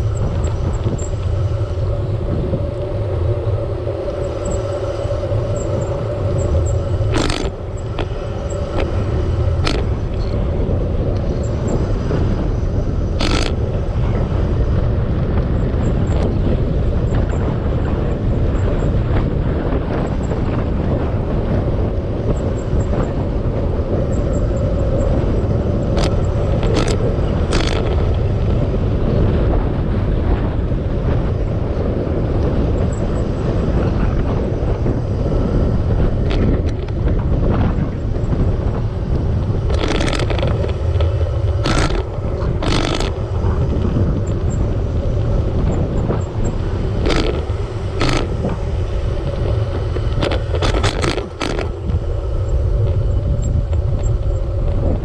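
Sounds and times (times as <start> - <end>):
wind and road noise: 0.0 - 55.0
sharp clicks: 7.1 - 8.1, 13.2 - 13.6, 26.0 - 28.1, 39.7 - 43.2, 47.0 - 48.6, 50.1 - 51.8.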